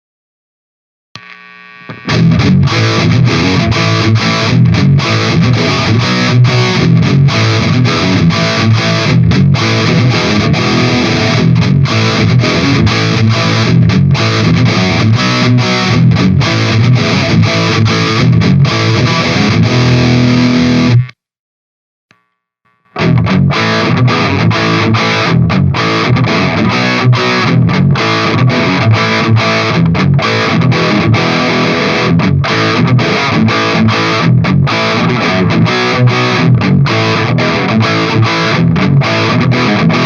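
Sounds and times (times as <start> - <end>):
distorted electric guitar riff: 1.2 - 21.3, 22.1 - 40.0.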